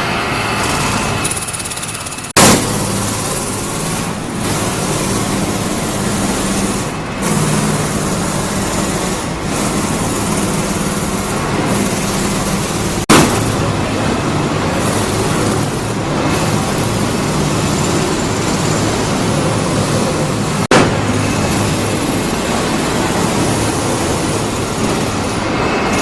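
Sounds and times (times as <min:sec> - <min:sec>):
machinery running with low hum: 0:00.0 - 0:26.0
brief loud burst: 0:13.1 - 0:13.9, 0:20.7 - 0:22.3.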